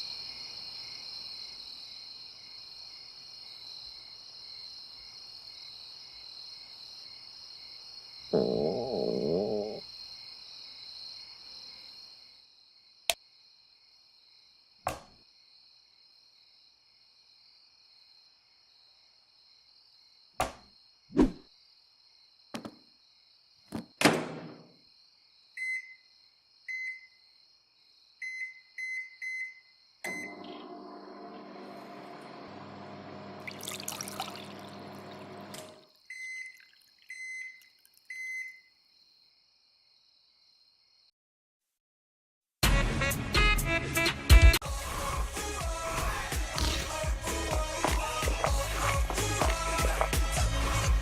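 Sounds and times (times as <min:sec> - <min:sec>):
crickets chirping: 0:00.0 - 0:24.0, 0:24.7 - 0:30.0, 0:35.8 - 0:41.1
knocks and thumps: 0:22.6 - 0:22.8.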